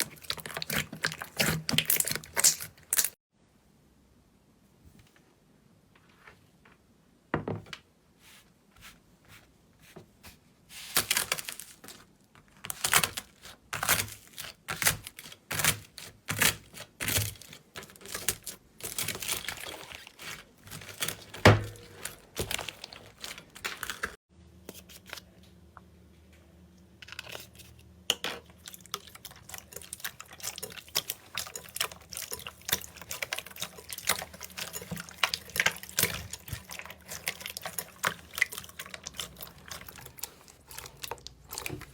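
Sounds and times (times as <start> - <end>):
slime squishing and popping: 0.0 - 3.2.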